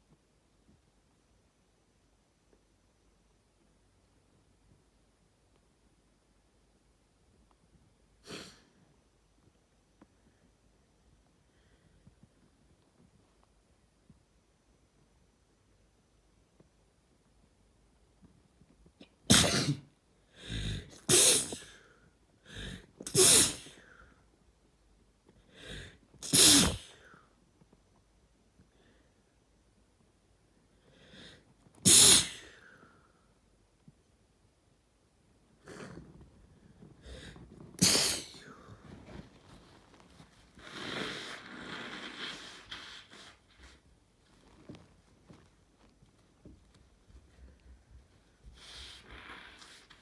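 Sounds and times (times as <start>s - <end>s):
person sneezing: 8.2s - 8.7s, 19.3s - 21.8s, 23.0s - 23.8s, 26.2s - 27.1s, 31.8s - 32.7s, 37.8s - 38.7s
nose blowing: 19.3s - 21.9s, 22.5s - 23.8s, 25.6s - 27.1s, 31.8s - 32.6s, 37.0s - 39.0s, 40.5s - 43.8s, 48.6s - 50.0s
sharp intake of breath: 37.0s - 38.7s.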